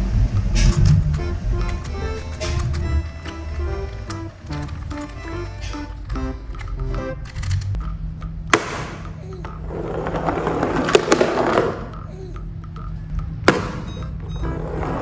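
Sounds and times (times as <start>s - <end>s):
sharp clacks: 0.3s - 9.2s
toy car wheels rolling down ramp: 9.6s - 12.1s.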